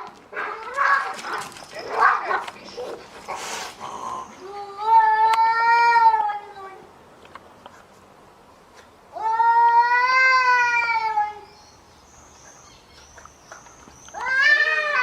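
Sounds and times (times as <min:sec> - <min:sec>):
cat yowling: 0:14.2 - 0:15.0.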